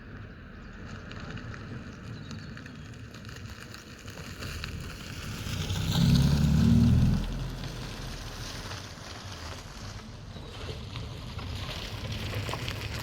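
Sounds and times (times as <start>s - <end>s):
wind rumbling on microphone: 0.0s - 13.0s
car engine revving: 4.7s - 8.8s.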